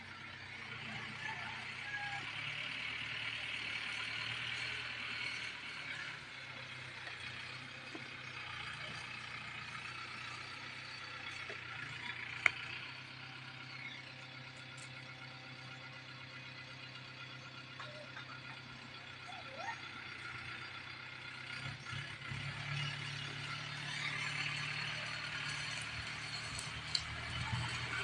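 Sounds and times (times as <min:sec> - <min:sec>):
engine humming: 0:00.0 - 0:28.0.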